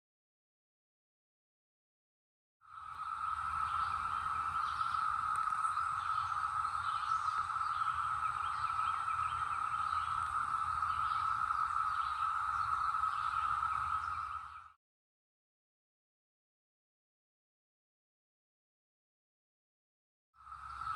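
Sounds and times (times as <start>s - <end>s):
cicadas droning: 2.6s - 14.8s, 20.4s - 20.9s.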